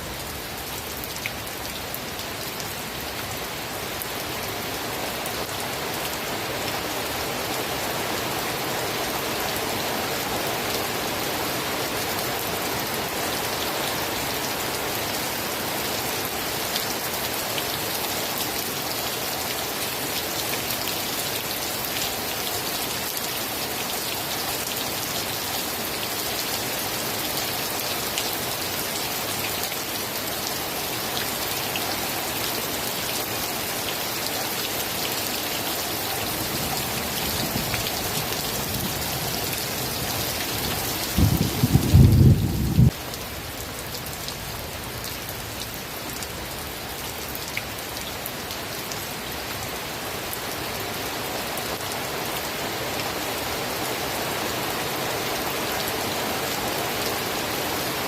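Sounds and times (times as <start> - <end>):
steady rain falling: 0.0 - 58.0
low rumble of thunder: 41.1 - 43.0.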